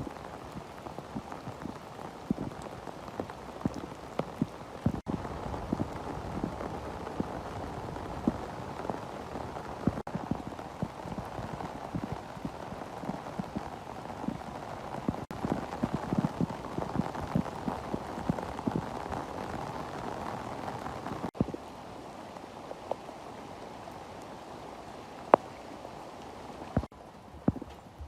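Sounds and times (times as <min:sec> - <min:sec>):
steady downpour: 0:00.0 - 0:28.0
hailstones knocking: 0:00.1 - 0:07.4, 0:09.8 - 0:20.1, 0:26.8 - 0:28.0.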